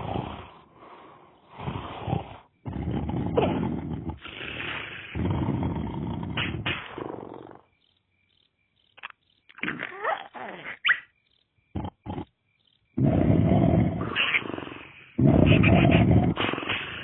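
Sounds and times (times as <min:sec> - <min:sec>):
cartoon snoring: 0:00.0 - 0:07.7, 0:11.7 - 0:12.4, 0:13.0 - 0:17.0.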